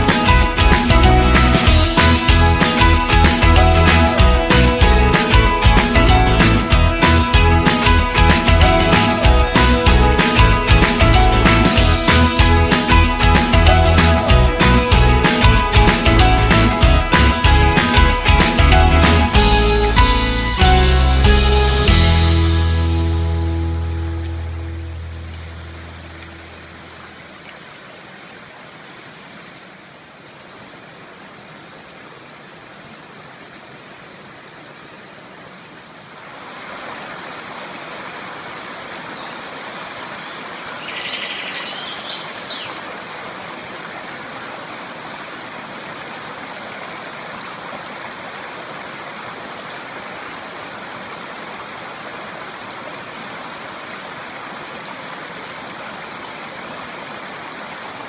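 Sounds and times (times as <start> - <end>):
river water rushing: 0.0 - 58.0
bird chirping: 39.2 - 42.8.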